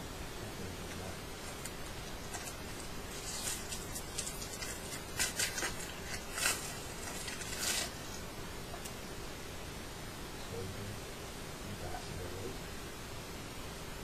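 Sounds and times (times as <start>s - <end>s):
recording hiss: 0.0s - 14.0s
trading cards rustling: 0.9s - 8.2s.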